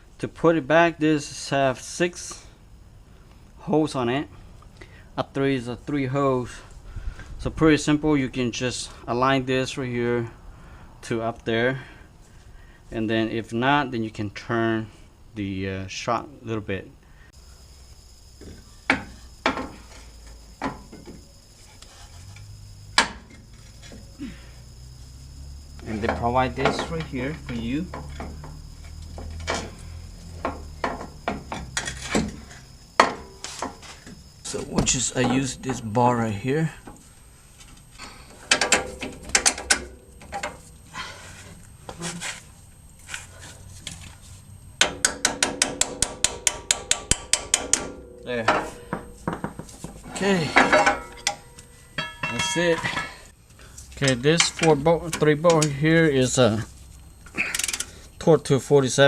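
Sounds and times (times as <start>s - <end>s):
metal tools clanking: 25.9s - 36.2s, 46.0s - 53.3s
metal parts clanking: 44.8s - 53.3s.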